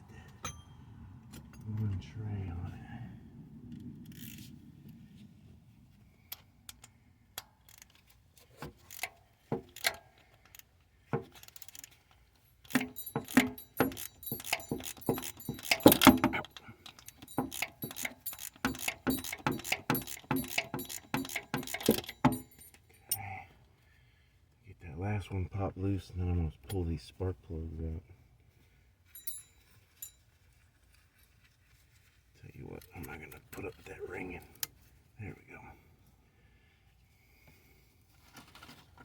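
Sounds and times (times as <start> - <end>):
hand ratchet clicking: 6.3 - 12.0, 12.7 - 22.8.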